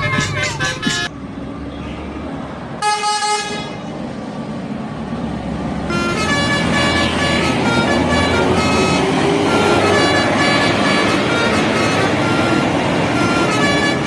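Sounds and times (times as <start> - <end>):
multi-tone musical air horn: 0.0 - 1.1, 2.8 - 3.8, 5.9 - 14.0
bus engine rumble: 0.0 - 14.0
traffic: 0.0 - 14.0.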